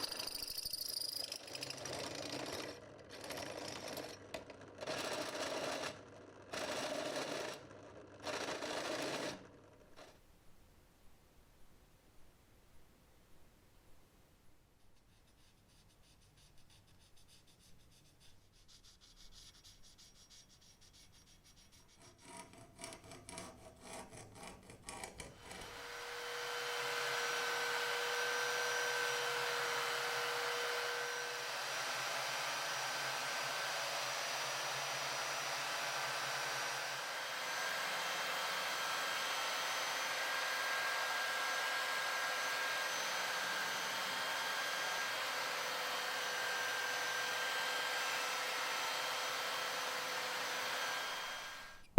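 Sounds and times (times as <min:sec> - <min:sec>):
rhythmic filing strokes: 0:15.0 - 0:24.6
power tool whining: 0:25.4 - 0:51.9.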